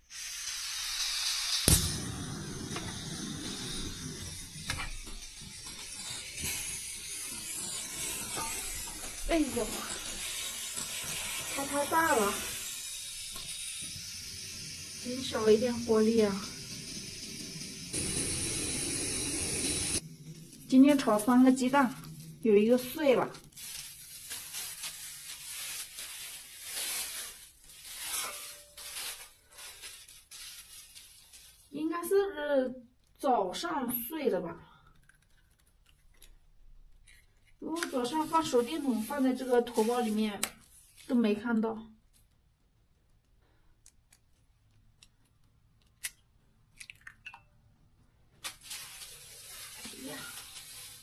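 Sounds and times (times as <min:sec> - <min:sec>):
eggs sizzling in a pan: 0:00.0 - 0:29.5, 0:37.6 - 0:41.2, 0:48.6 - 0:51.0.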